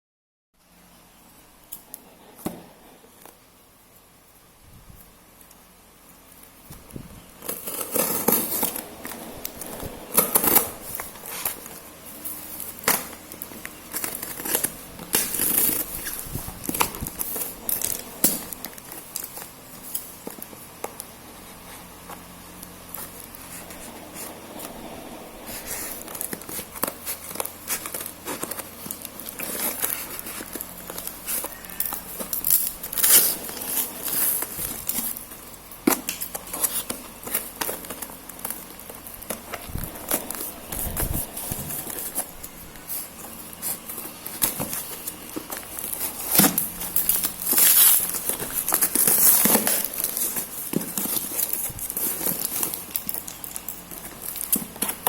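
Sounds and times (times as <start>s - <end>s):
packaging crinkling and tearing: 7.4s - 20.7s, 25.4s - 55.0s.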